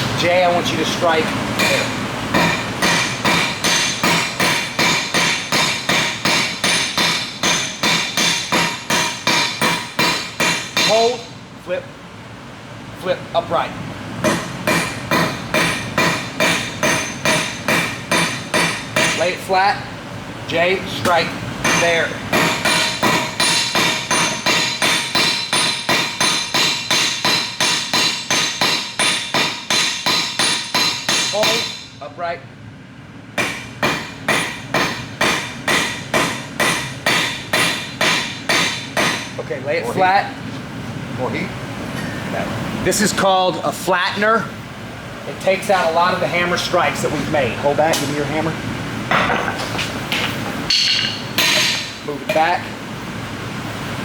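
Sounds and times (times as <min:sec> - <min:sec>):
hammer striking steel on anvil: 0:01.6 - 0:11.2, 0:14.2 - 0:19.3, 0:21.0 - 0:31.9, 0:33.4 - 0:39.4, 0:49.1 - 0:52.6.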